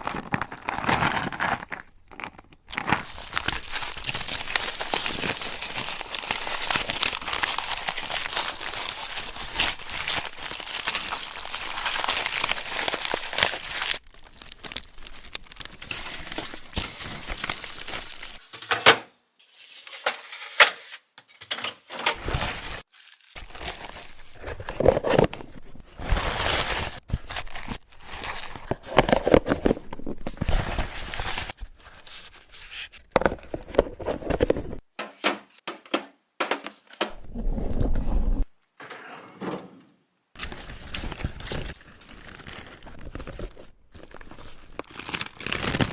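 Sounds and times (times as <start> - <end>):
plastic packaging crinkling: 0.0 - 18.5, 22.3 - 34.8, 40.4 - 45.9.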